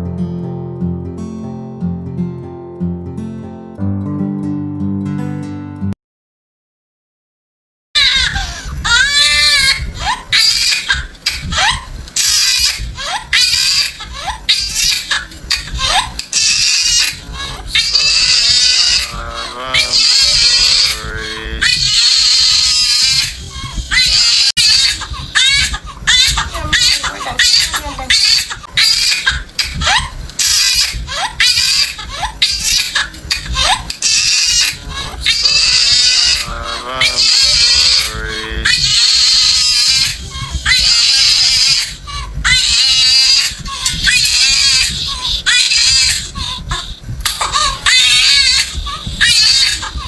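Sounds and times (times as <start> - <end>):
baby crying: 8.0 - 50.0
person's high-pitched cries: 8.0 - 50.0.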